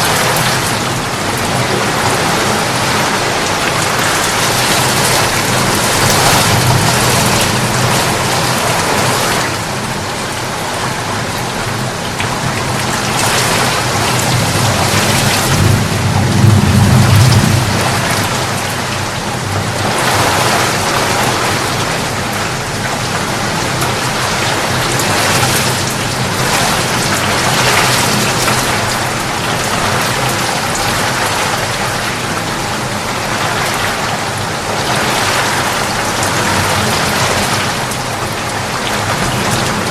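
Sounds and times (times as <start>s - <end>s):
thunder rumbling: 0.0s - 9.4s, 13.3s - 21.8s
rain falling: 0.0s - 39.9s.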